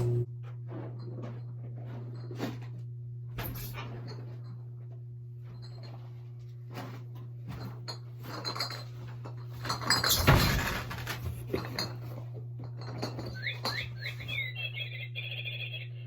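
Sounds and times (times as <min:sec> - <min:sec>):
low electrical hum: 0:00.0 - 0:16.0
dishes and cutlery clattering: 0:07.5 - 0:10.9, 0:11.5 - 0:14.2.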